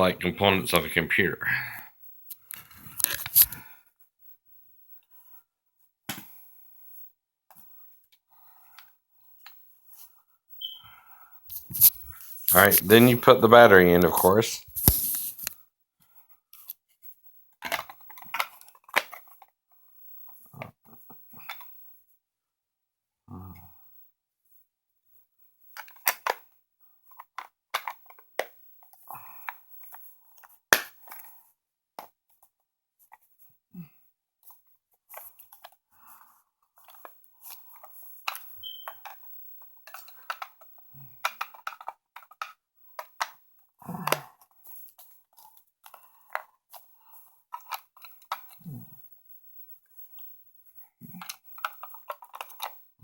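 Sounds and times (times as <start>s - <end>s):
plastic case clicks and rattles: 41.2s - 43.4s.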